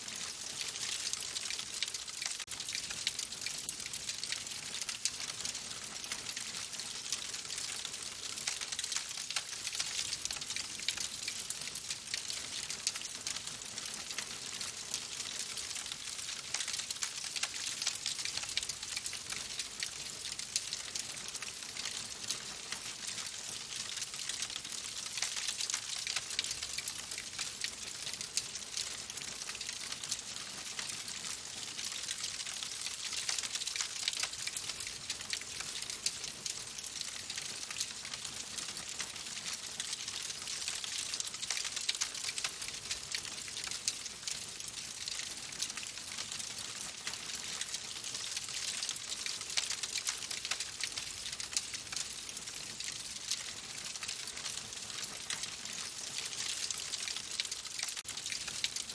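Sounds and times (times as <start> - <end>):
wood fire crackling: 38.6 - 43.8, 44.6 - 45.8, 56.2 - 58.6.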